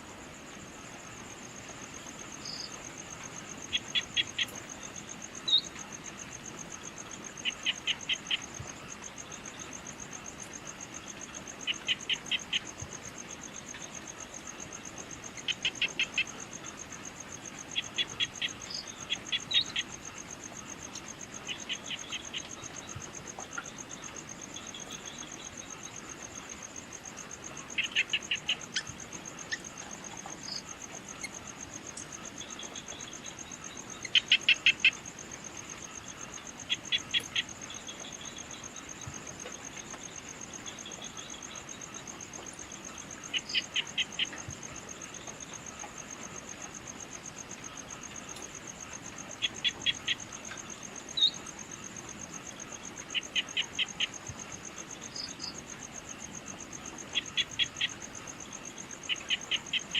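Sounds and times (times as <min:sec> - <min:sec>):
insect trill: 0:00.0 - 0:59.9.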